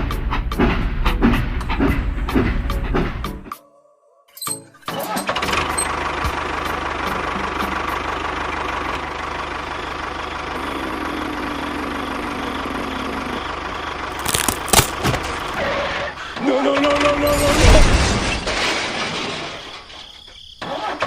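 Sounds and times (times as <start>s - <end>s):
small engine idling: 5.2s - 16.5s.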